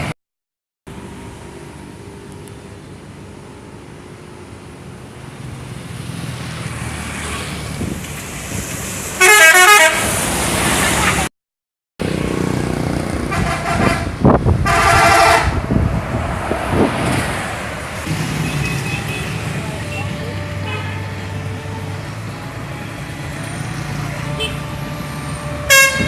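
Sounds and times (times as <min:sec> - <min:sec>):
bus engine: 0:00.9 - 0:11.3, 0:12.0 - 0:26.0
road noise: 0:00.9 - 0:11.3, 0:12.0 - 0:26.0
multi-tone musical bus horn: 0:09.2 - 0:10.2, 0:13.2 - 0:15.7, 0:18.4 - 0:26.0.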